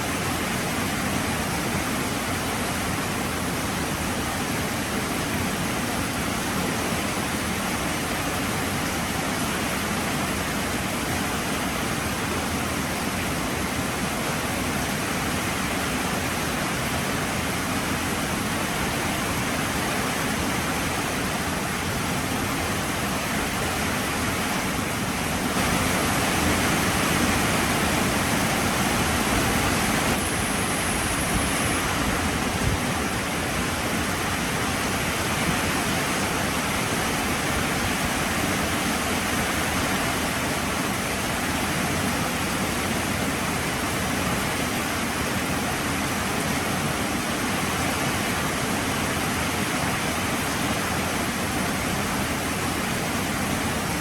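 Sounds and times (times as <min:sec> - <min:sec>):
heavy rain falling: 0:17.7 - 0:47.2.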